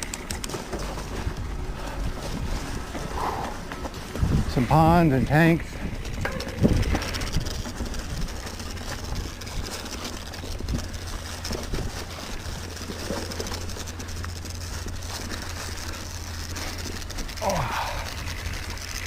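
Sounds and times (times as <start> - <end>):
bicycle tyres rolling on dirt: 0.0 - 19.0
bike clicks and rattles: 0.0 - 19.0
wind rumble on microphone: 1.2 - 12.6.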